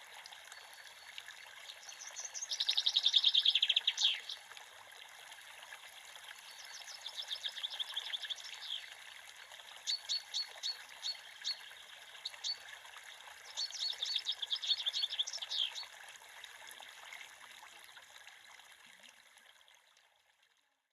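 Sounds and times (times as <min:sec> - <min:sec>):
creek water running: 0:00.0 - 0:20.5
songbird chirping: 0:00.6 - 0:04.4, 0:13.5 - 0:15.8.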